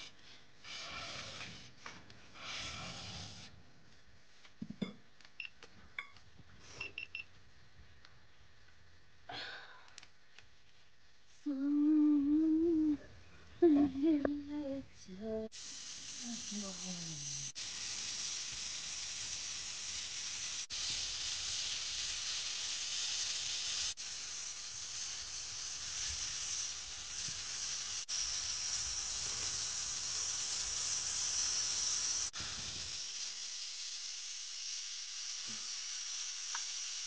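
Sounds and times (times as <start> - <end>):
meat sizzling in a pan: 15.5 - 37.0.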